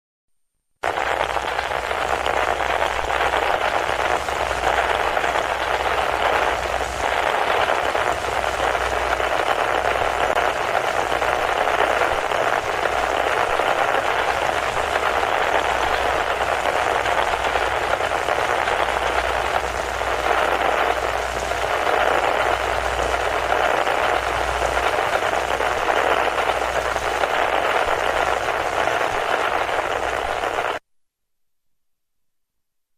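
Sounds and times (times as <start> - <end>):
static electricity crackling: 0.8 - 30.8.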